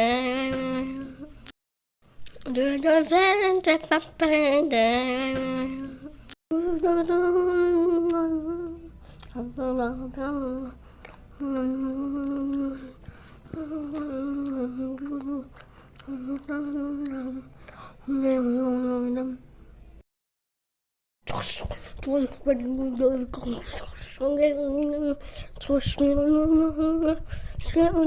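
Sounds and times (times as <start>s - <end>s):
person humming a slow tune: 0.0s - 1.4s, 4.2s - 19.4s.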